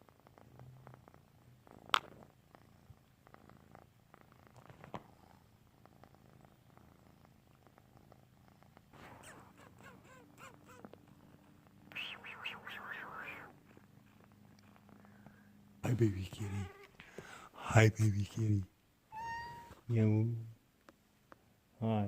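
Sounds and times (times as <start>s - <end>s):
cat purring: 0.0s - 18.7s.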